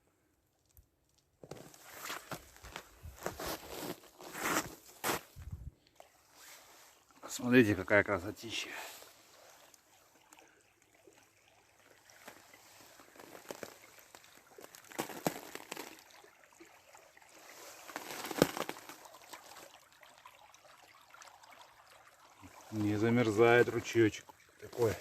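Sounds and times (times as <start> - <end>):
brook trickling: 5.8 - 25.0.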